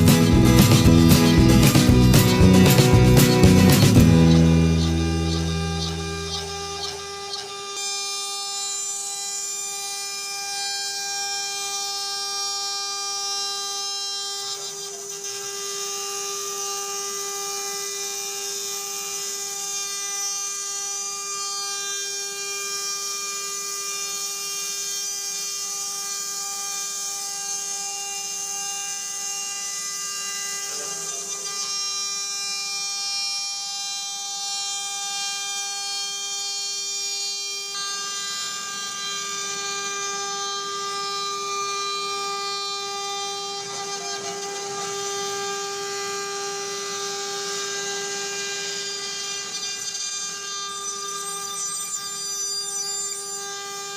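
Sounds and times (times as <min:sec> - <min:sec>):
cutting hiss: 0:00.0 - 0:10.3
router spindle whining: 0:00.0 - 0:53.9.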